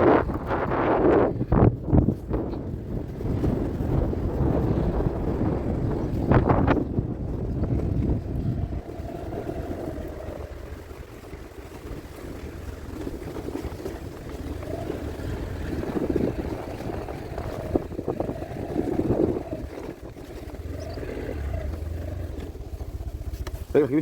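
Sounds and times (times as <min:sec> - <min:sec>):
vehicle engine running: 0:00.0 - 0:24.0
wind on microphone: 0:00.0 - 0:24.0.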